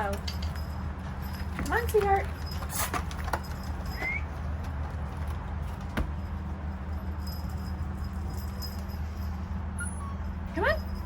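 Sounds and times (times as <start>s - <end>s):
collar jingling: 0.0s - 11.0s.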